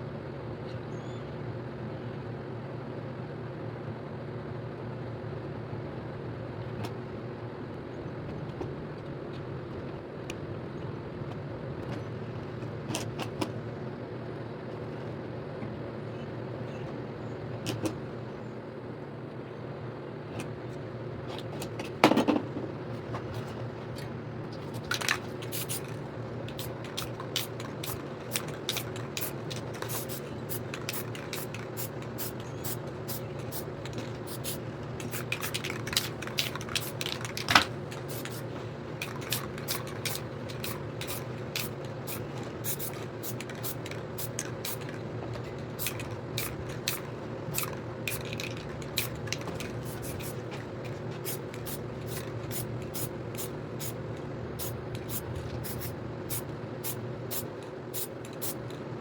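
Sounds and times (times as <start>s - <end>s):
steady low hum: 0.0s - 59.0s
spray paint can hissing: 24.7s - 54.0s, 54.6s - 58.6s.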